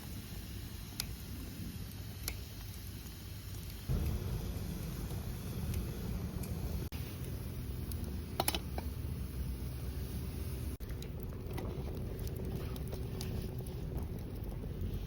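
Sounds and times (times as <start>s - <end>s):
campfire crackling and popping: 0.0s - 15.0s
steady low rumble: 3.8s - 15.0s.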